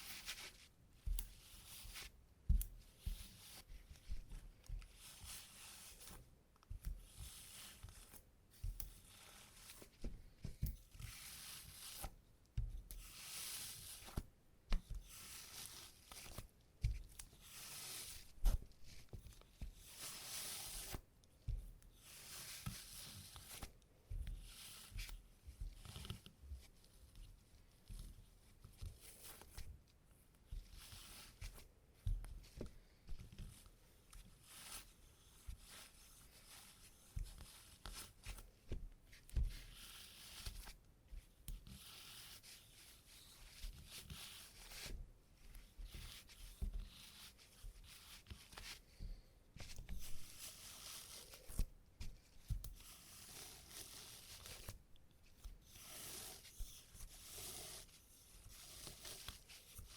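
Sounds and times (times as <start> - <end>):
tape dabbing on fabric: 0.0 - 27.2, 27.8 - 59.9.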